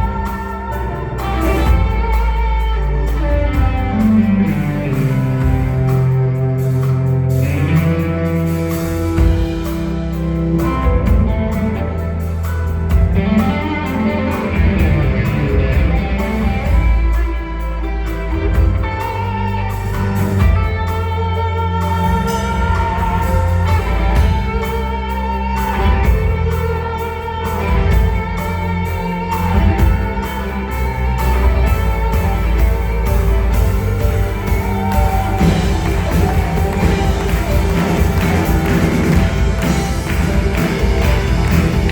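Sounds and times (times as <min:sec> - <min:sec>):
guitar: 0:00.0 - 0:41.9
steady bass line: 0:00.0 - 0:41.9
drum beat: 0:33.6 - 0:41.9.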